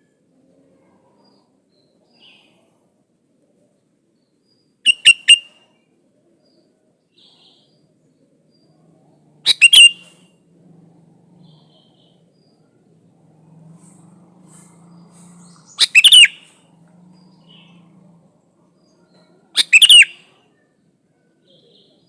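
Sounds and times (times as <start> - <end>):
bird calling sharp notes: 4.8 - 5.6, 9.4 - 10.3, 14.5 - 16.7, 19.6 - 20.4.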